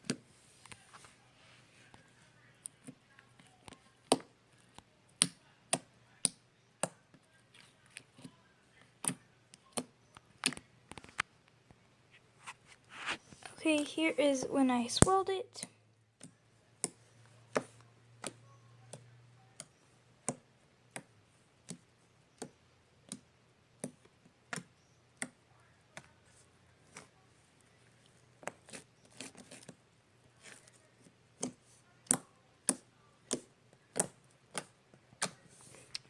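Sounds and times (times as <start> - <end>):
slime clicking and popping: 31.4 - 35.4.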